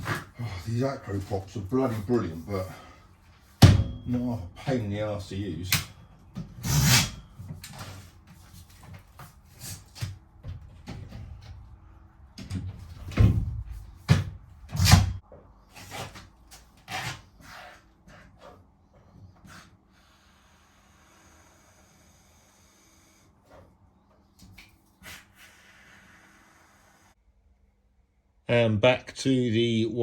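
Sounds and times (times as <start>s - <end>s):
loud thuds: 3.6s - 4.1s.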